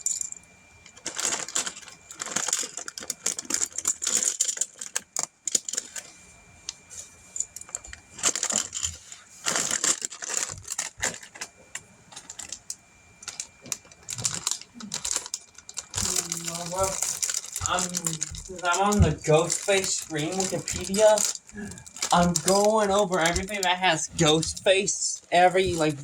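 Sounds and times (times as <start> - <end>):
plastic pieces rattling and clicking: 1.0 - 6.1, 7.4 - 26.0.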